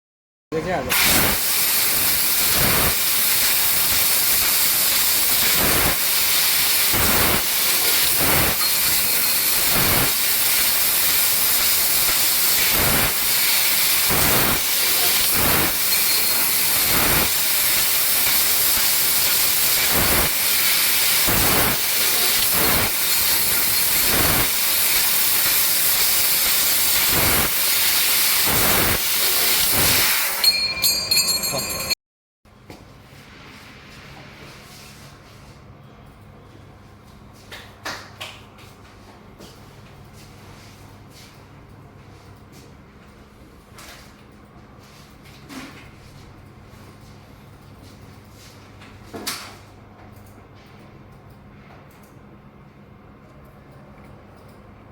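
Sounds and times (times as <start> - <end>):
laser cutter hissing: 0.9 - 30.4.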